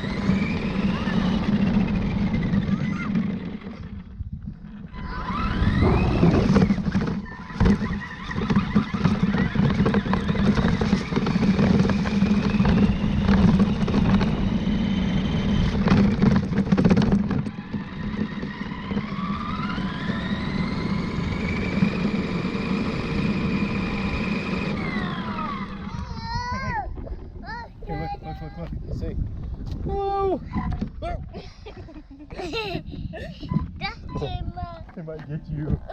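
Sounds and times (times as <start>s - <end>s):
electric motor whine: 0.0s - 26.2s
tyres rumbling over rough ground: 0.0s - 35.9s.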